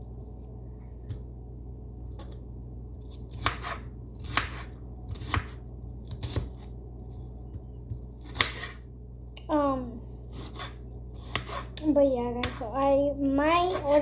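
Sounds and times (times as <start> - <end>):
knife chopping on cutting board: 3.3 - 6.7, 7.5 - 8.8, 10.3 - 11.7, 12.4 - 12.7, 13.6 - 14.0.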